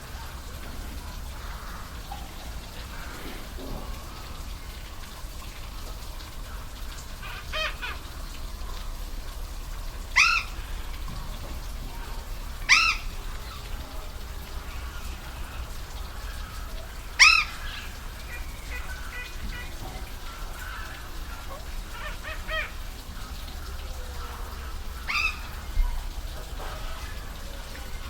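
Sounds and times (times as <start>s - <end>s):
waterfall rushing: 10.0s - 28.0s
bird squawking: 12.6s - 13.6s, 17.2s - 22.8s.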